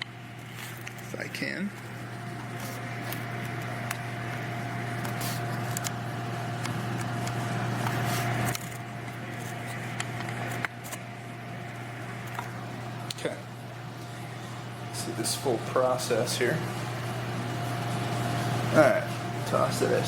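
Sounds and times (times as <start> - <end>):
machine humming with high whine: 0.0 - 20.0.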